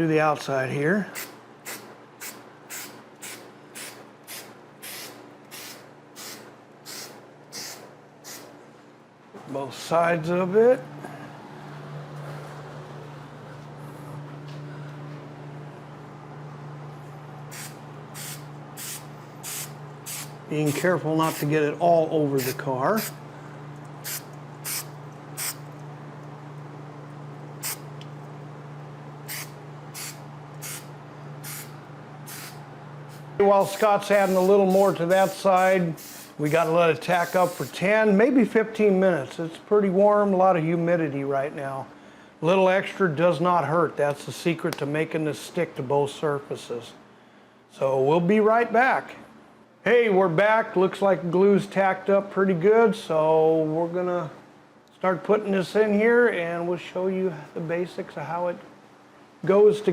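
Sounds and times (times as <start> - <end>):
aerosol spray hissing: 1.2 - 8.5, 17.5 - 21.5, 22.4 - 23.2, 24.0 - 25.6, 29.3 - 37.8.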